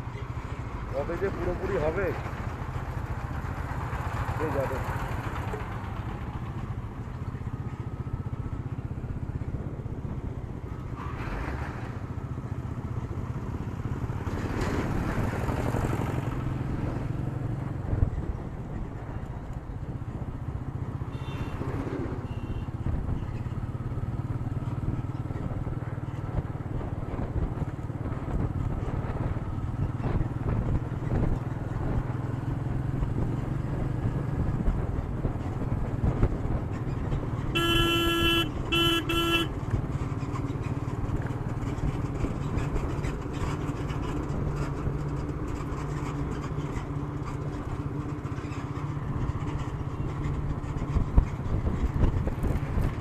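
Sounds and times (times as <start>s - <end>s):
passing traffic: 0.0s - 53.0s
road rumble: 0.0s - 53.0s
motorcycle engine running: 0.1s - 11.0s, 11.7s - 53.0s
wind noise: 24.8s - 32.2s, 47.6s - 53.0s.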